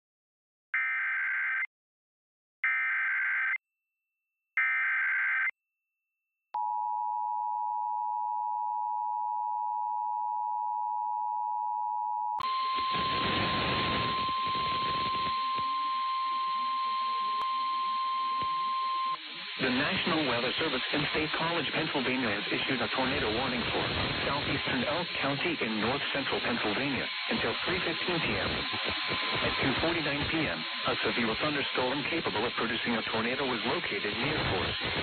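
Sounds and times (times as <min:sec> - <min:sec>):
digital data screech: 0:12.4 - 0:15.8, 0:18.4 - 0:35.0
radio static: 0:12.4 - 0:15.8, 0:18.3 - 0:35.0
two-tone attention signal: 0:12.4 - 0:20.4.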